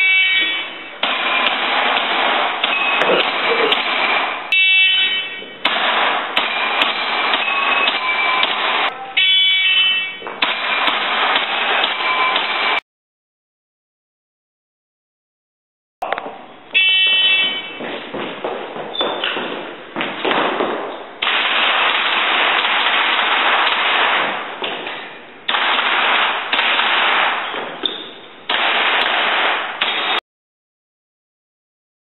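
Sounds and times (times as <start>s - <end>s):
airsoft gun firing bursts: 1.0s - 4.5s, 5.6s - 8.9s, 10.4s - 12.8s, 19.3s - 24.9s, 25.5s - 27.9s, 28.5s - 30.2s.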